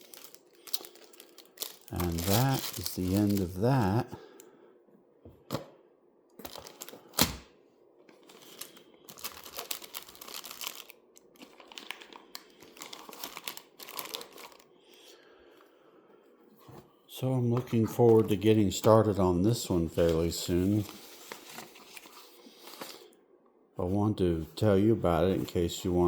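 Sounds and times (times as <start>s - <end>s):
plastic bags crinkling: 0.0s - 4.0s, 6.4s - 7.3s, 8.2s - 14.7s.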